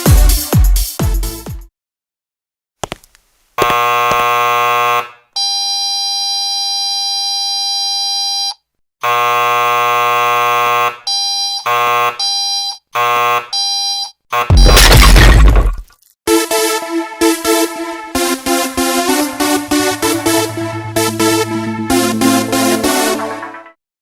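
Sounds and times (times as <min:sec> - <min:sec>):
short repeated buzzer blasts: 0:03.6 - 0:05.2, 0:09.0 - 0:14.9
electronic buzzer tones: 0:09.0 - 0:14.9
steady tone: 0:16.8 - 0:23.8.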